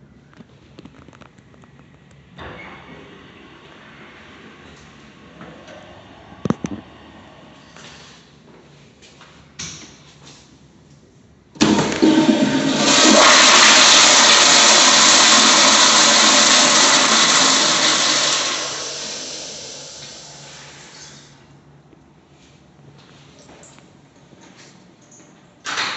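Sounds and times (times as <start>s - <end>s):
toilet flushing: 11.6s - 21.4s.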